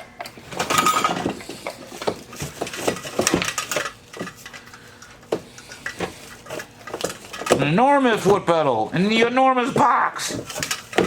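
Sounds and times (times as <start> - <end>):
metal parts clinking and rattling: 0.5 - 7.7, 10.2 - 11.0.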